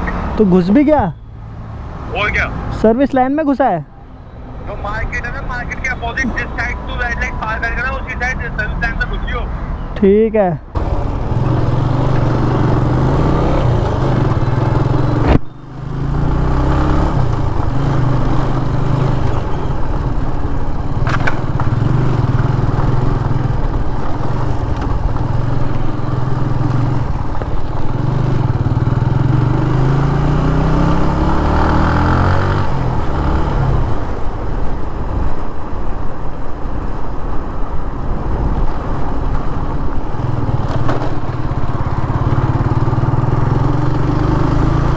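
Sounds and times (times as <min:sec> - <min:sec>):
motorcycle engine accelerating: 0:10.8 - 0:34.4, 0:38.4 - 0:44.9.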